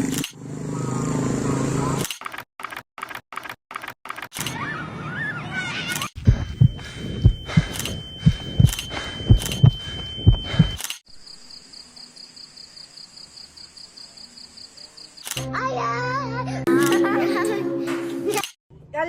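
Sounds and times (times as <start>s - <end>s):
heartbeat double thumps: 6.2s - 10.8s.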